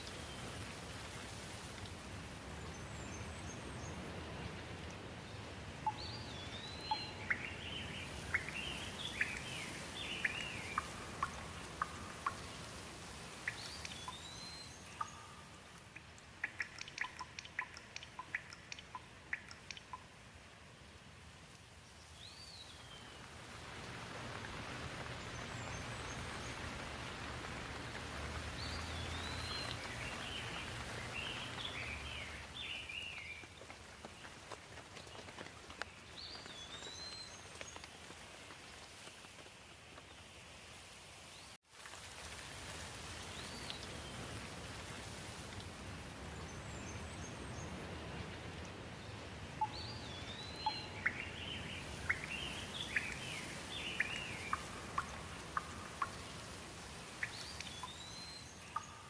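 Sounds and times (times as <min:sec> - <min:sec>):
birds chirping: 0:05.8 - 0:12.7, 0:25.0 - 0:33.5, 0:49.6 - 0:56.4
rain hissing: 0:07.8 - 0:15.0, 0:22.5 - 0:39.5, 0:41.7 - 0:58.8
sharp ticks: 0:15.0 - 0:20.1.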